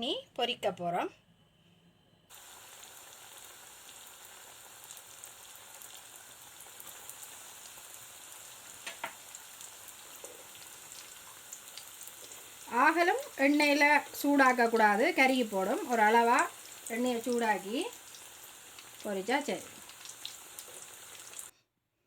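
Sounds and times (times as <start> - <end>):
deep-frying in hot oil: 2.3 - 21.5
oil popping: 8.8 - 9.4.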